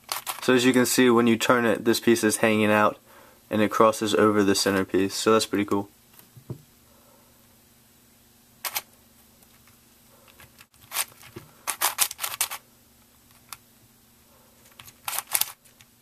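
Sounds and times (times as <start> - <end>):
puzzle cube clicking: 8.6 - 8.8, 14.6 - 15.9.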